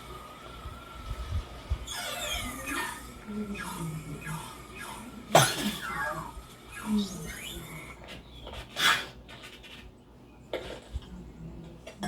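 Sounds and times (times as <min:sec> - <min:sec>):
cartoon squeaks: 0:01.9 - 0:05.0, 0:05.8 - 0:08.0.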